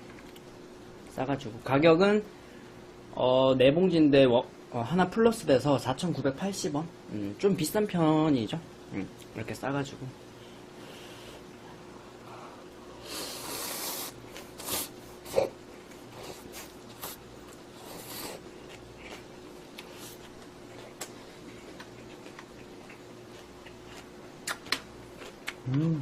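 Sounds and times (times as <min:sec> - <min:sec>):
low steady hum: 0:00.0 - 0:26.0
mouth clicks of chewing: 0:24.4 - 0:25.9.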